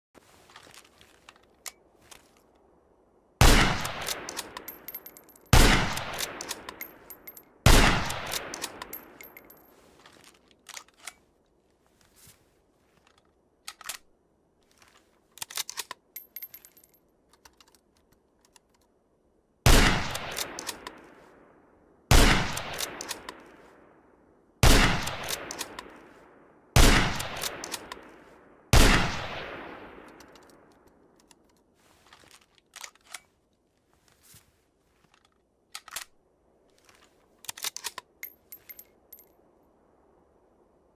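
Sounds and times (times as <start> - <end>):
rifle shots echoing: 3.4 - 7.0, 7.6 - 9.2, 19.6 - 21.0, 22.1 - 23.6, 24.6 - 26.1, 26.8 - 30.2
rifle bolt clicks: 3.8 - 11.2, 13.0 - 14.1, 15.4 - 19.0, 20.1 - 21.1, 22.5 - 23.6, 25.0 - 26.1, 27.1 - 28.2, 30.0 - 33.3, 35.0 - 36.2, 36.8 - 39.2.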